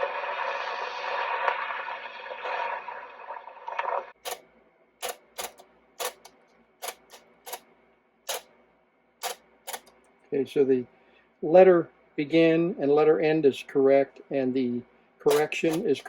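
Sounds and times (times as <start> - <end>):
sharp mechanical key clicks: 4.3 - 7.7, 8.3 - 8.6, 9.2 - 10.0, 15.3 - 16.0.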